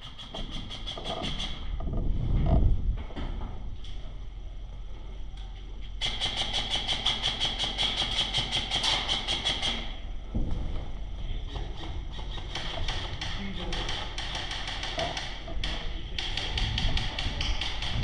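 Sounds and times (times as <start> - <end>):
airsoft gun full-auto fire: 6.0 - 9.8, 12.5 - 18.0.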